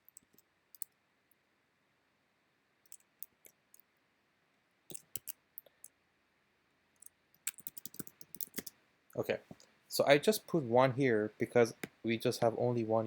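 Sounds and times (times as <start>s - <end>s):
keyboard keystrokes clicking: 7.5s - 8.7s.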